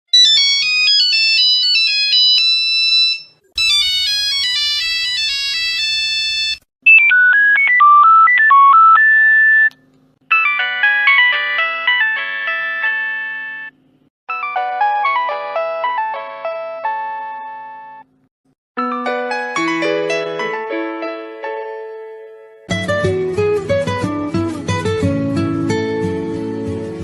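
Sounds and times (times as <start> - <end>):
mobile phone ringtones: 0.2 - 9.7, 10.3 - 13.8.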